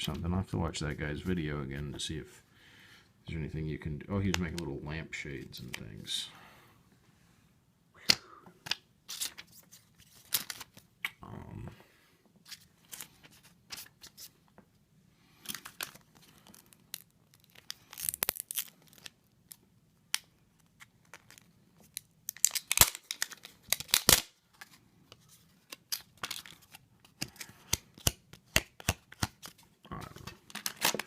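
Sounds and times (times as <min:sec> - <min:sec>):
plastic film crinkling and tearing: 0:15.5 - 0:19.6, 0:20.6 - 0:24.7, 0:25.6 - 0:31.0.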